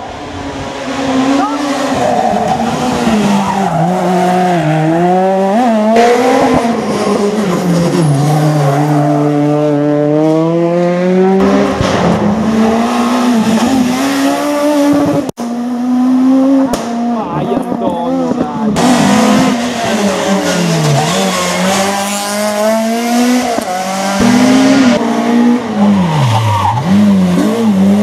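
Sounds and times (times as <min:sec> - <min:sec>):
rally car engines at full throttle: 0:00.0 - 0:28.0.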